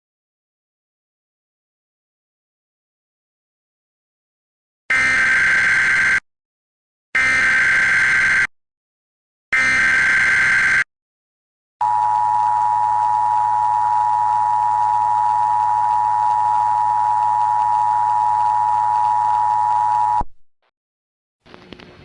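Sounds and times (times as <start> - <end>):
data burst buzzing screech: 4.9 - 6.2, 7.2 - 8.5, 9.6 - 10.9
two-tone alert signal: 11.8 - 20.3.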